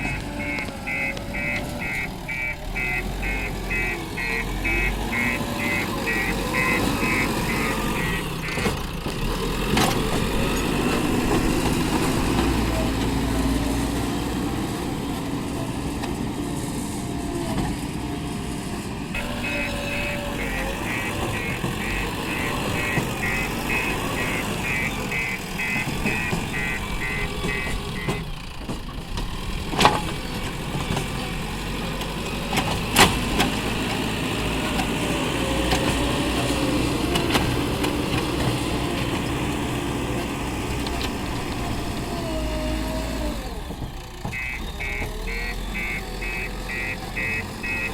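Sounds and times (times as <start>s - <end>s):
beeping alarm: 0.0s - 8.8s, 19.2s - 28.3s, 44.3s - 47.9s
diesel engine running: 0.0s - 47.9s.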